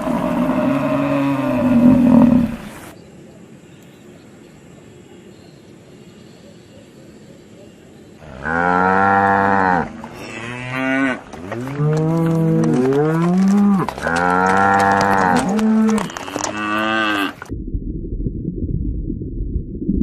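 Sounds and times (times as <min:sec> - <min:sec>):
cattle mooing: 0:00.0 - 0:02.6, 0:08.2 - 0:17.5.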